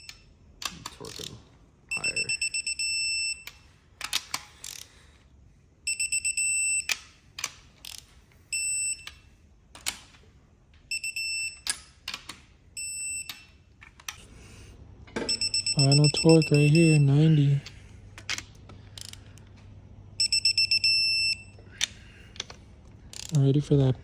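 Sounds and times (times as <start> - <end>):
torque wrench beeping: 1.9 - 3.6, 8.5 - 9.2, 12.8 - 13.6, 15.2 - 17.8, 20.2 - 22.0
wrench clicking: 18.2 - 19.5, 21.8 - 23.4.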